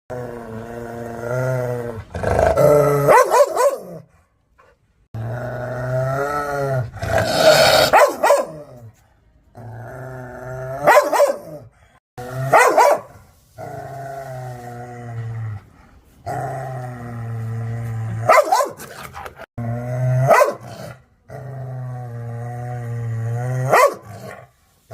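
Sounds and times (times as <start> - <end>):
dog barking sharply: 3.1 - 3.9, 7.9 - 8.6, 10.9 - 11.5, 12.5 - 13.1
dog growling: 5.1 - 8.0.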